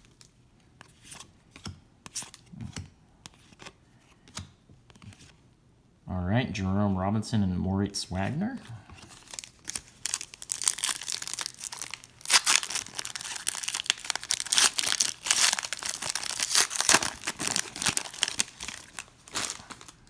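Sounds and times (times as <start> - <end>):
plastic wrapper crinkling and tearing: 9.0 - 20.0.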